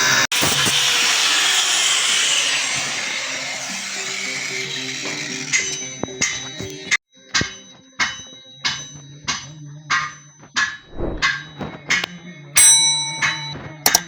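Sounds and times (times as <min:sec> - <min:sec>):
hammer ringing on metal: 0:05.2 - 0:14.0.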